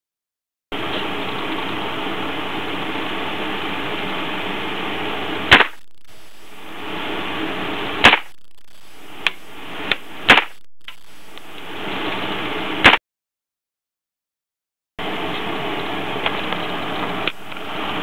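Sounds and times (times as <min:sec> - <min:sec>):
steady hiss: 0:04.5 - 0:12.6
loud gunshots: 0:08.0 - 0:08.3.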